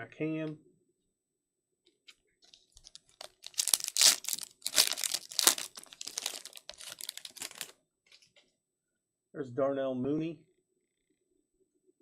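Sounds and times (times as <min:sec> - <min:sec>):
plastic wrapper crinkling: 0:02.5 - 0:08.2.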